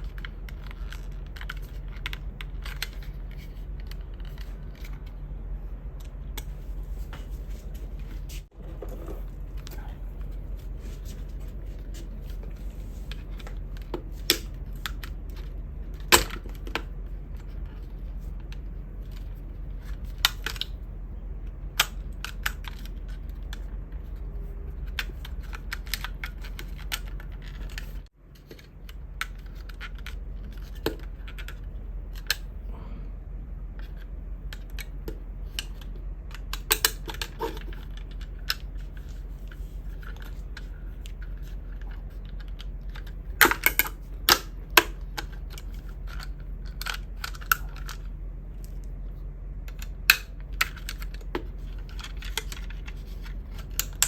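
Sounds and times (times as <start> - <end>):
steady low hum: 0.0 - 54.0
clicks of plastic and metal parts: 33.8 - 48.8.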